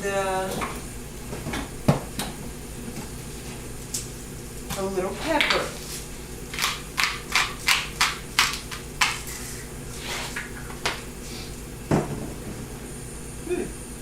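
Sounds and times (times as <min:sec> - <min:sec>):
pepper shaker strokes: 0:08.7 - 0:10.5.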